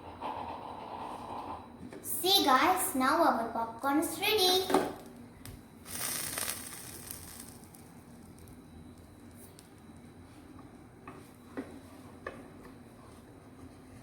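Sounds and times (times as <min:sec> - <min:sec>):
popcorn clicks: 0:05.0 - 0:09.8
popcorn rustle: 0:05.9 - 0:08.6.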